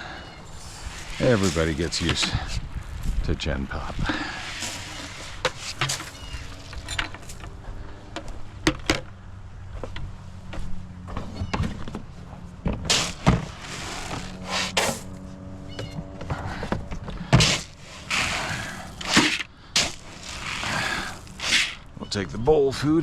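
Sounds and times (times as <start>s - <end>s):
feed pouring: 0.6s - 2.5s, 17.8s - 21.8s.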